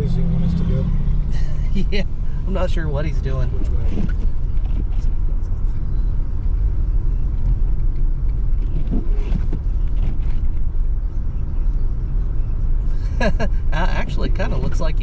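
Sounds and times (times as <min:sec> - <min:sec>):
voices: 0:00.0 - 0:04.2, 0:11.3 - 0:15.0
car interior rumble: 0:00.0 - 0:15.0.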